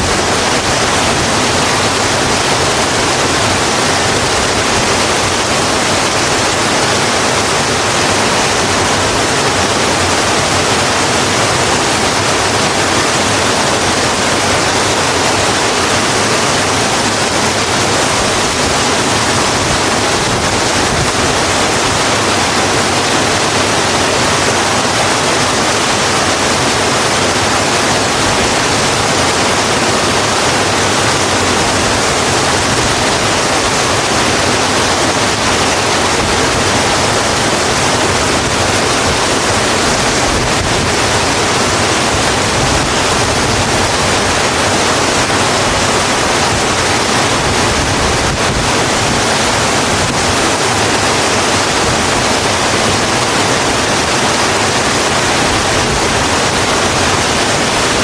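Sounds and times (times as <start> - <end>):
heavy rain on a road: 0.0 - 58.0.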